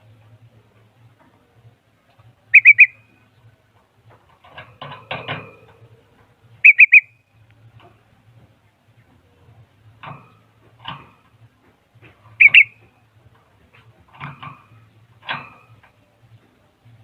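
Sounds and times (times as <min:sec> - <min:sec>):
bulbul whistled notes: 0:02.5 - 0:03.0, 0:06.6 - 0:07.2, 0:12.4 - 0:12.8
bird rattle call: 0:02.5 - 0:03.1, 0:06.6 - 0:07.1, 0:12.3 - 0:12.9.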